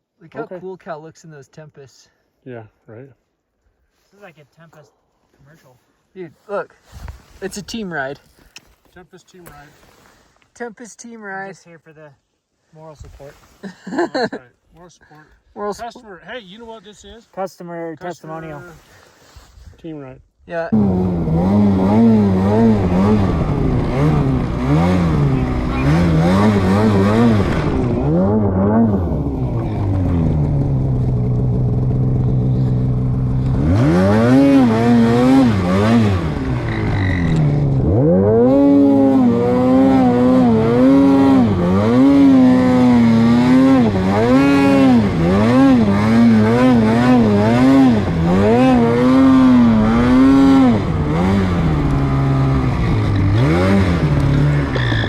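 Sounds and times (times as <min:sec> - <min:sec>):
snowmobile engine revving: 0:20.7 - 0:55.0.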